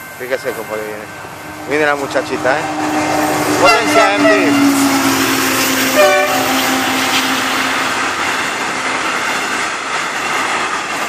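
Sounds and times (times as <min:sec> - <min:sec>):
train passing at speed: 0:00.0 - 0:11.0
train horn: 0:01.5 - 0:08.0.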